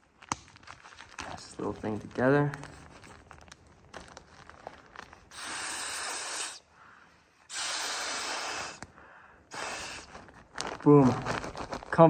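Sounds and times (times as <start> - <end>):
air hissing into pillow: 5.2 - 6.7, 7.4 - 11.2.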